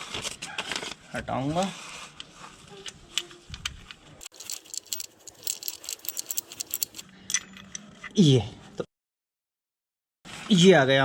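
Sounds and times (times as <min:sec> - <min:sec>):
hand tools clicking on metal: 0:04.2 - 0:07.6.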